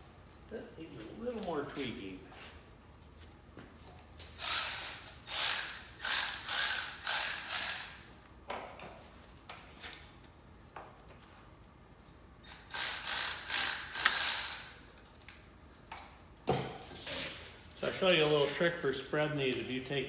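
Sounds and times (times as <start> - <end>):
ratchet wrench rasping: 4.3 - 8.0, 12.5 - 14.8.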